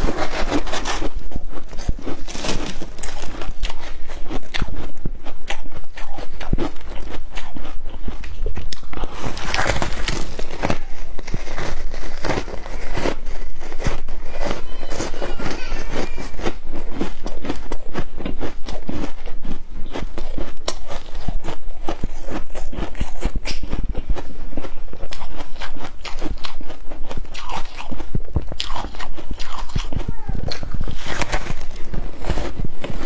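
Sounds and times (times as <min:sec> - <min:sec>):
person chewing ice crunching: 0:00.0 - 0:33.0.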